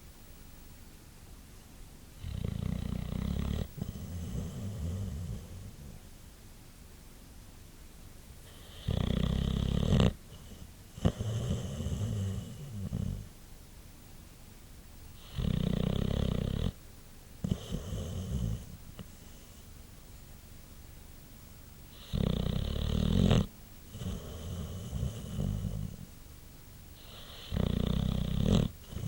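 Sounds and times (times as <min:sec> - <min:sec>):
dog snoring: 0:02.2 - 0:06.0, 0:08.4 - 0:13.3, 0:15.2 - 0:16.8, 0:17.4 - 0:19.6, 0:21.9 - 0:26.1, 0:27.0 - 0:29.0.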